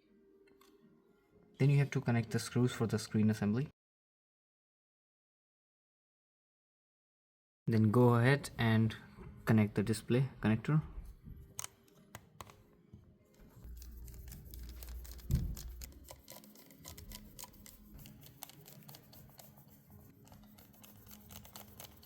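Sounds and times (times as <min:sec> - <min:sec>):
faint clicks and taps of tools: 0:11.5 - 0:12.6
soft thump: 0:15.2 - 0:15.9.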